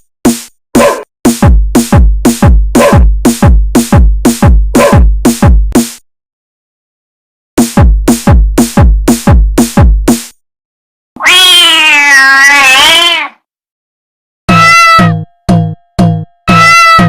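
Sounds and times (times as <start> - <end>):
drum machine kick: 0.0 - 6.0, 7.6 - 10.4
long wavering pitched cry: 14.5 - 15.2.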